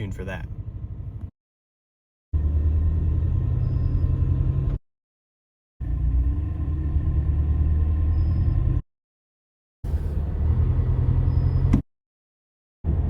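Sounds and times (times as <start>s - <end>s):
faint high chirp: 3.6s - 4.3s, 8.1s - 8.8s, 11.2s - 11.7s.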